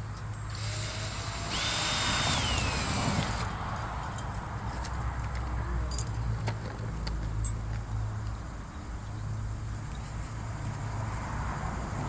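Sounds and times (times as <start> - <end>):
power drill motor whine: 0.5 - 3.5.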